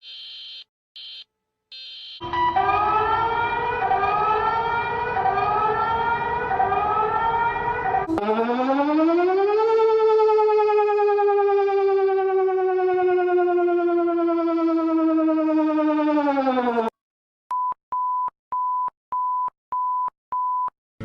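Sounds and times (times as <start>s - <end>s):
siren wail: 1.8s - 17.0s
droning alarm tone with rising sweeps: 2.2s - 16.9s.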